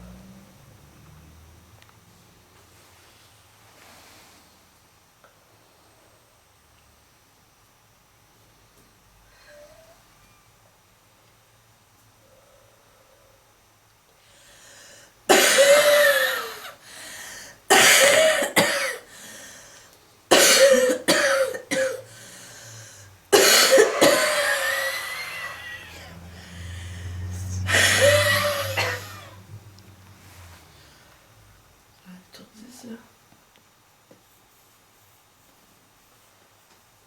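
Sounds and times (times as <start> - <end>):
harsh rasping coughs: 15.3 - 16.8, 17.7 - 19.1, 20.3 - 22.2, 23.3 - 26.2, 27.3 - 29.5.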